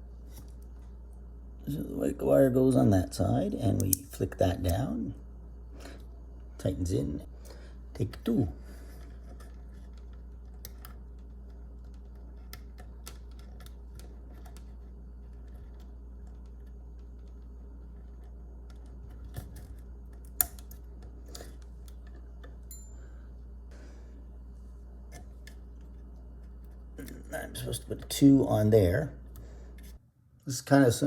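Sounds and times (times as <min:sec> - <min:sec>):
low steady hum: 0:00.0 - 0:31.0
clicks of wires being handled: 0:03.7 - 0:05.0, 0:07.4 - 0:23.0.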